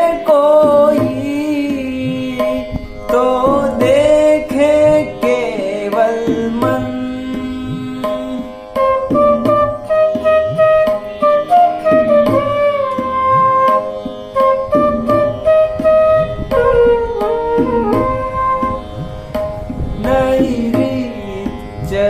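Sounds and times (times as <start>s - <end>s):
hand drum strokes: 0.0s - 22.0s
flute melody: 8.7s - 19.1s.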